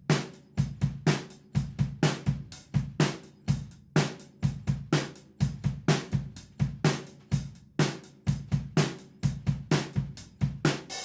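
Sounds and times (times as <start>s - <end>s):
drum kit rock groove: 0.0s - 11.0s.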